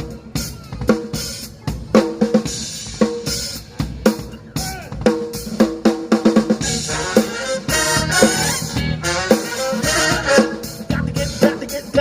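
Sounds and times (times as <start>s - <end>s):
drum kit snare and rimshot beat: 0.0s - 12.0s
horn section riff: 6.5s - 11.8s.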